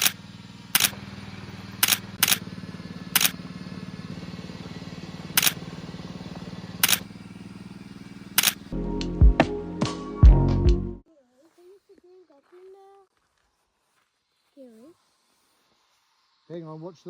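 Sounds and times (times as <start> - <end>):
small engine running: 0.0 - 9.0, 11.2 - 17.0
camera shutter firing: 0.8 - 1.0, 1.8 - 2.4, 3.2 - 3.4, 5.4 - 5.6, 6.8 - 7.0, 8.4 - 8.6.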